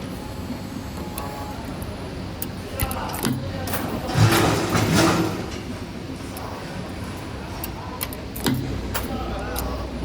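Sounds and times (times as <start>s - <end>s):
spring forming machine drone: 0.0s - 6.5s.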